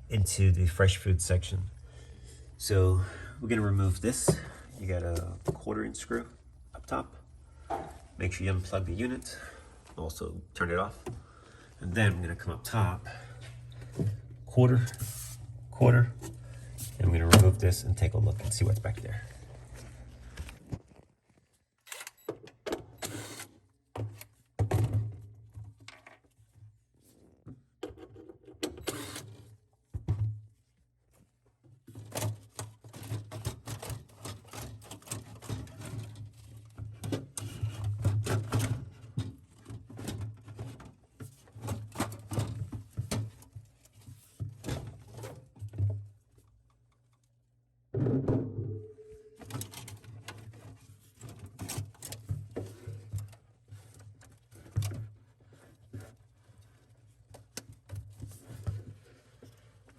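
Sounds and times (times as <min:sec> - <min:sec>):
low hum: 0:48.2 - 0:49.5.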